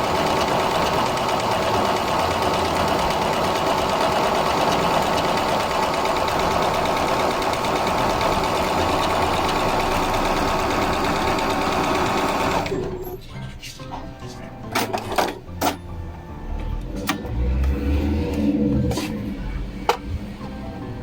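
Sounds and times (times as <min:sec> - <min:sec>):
sewing machine running: 0:00.0 - 0:13.0.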